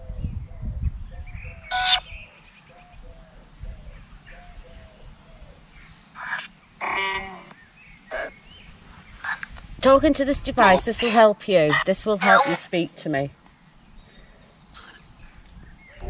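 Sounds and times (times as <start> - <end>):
chirping radio sweep pulse: 1.5 - 2.2, 8.1 - 8.4
snatches of broadcast sound: 1.7 - 2.0.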